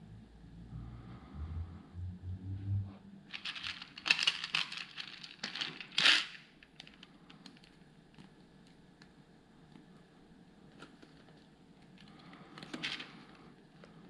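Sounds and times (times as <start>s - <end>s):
plastic pieces clicking and rattling: 3.3s - 7.7s.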